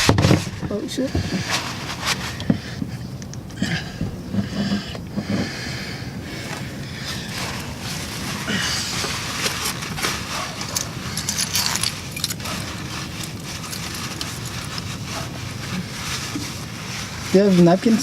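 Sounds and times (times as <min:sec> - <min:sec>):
steady low hum: 0:00.0 - 0:18.0
light clinking and rattling: 0:06.4 - 0:18.0.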